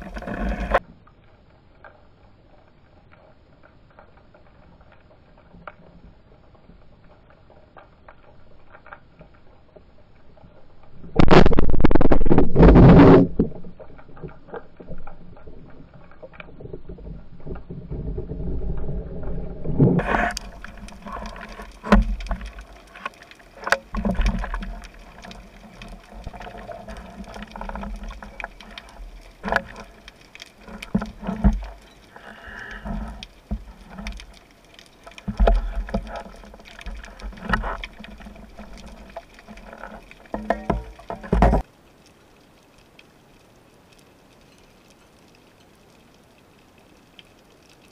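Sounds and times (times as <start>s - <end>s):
underwater rush of water: 0.0s - 1.6s, 3.3s - 47.9s
sharp clicks and knocks: 32.7s - 41.7s.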